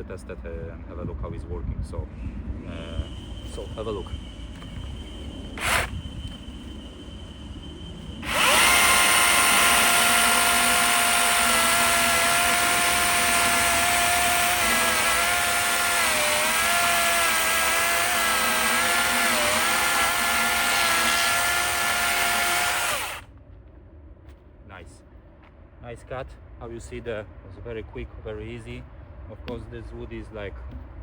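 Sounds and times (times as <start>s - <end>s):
chainsaw cutting log: 5.6s - 6.0s, 8.2s - 23.2s.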